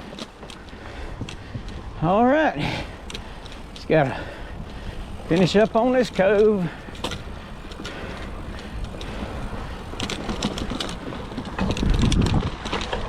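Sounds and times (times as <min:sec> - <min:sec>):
bike rumbling over rough ground: 0:00.0 - 0:13.0
bike tyre and drivetrain noise: 0:00.0 - 0:13.0
rattling clicks: 0:02.8 - 0:13.0.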